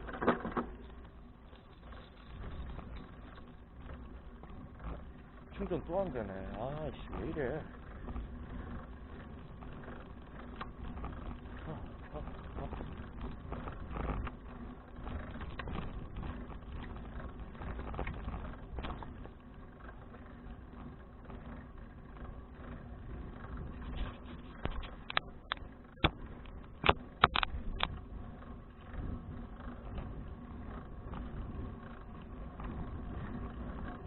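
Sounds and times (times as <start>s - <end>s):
sharp clicks and knocks: 0.0s - 8.2s, 15.0s - 19.4s, 23.6s - 28.1s
rumble of wind and tyres: 0.0s - 34.0s.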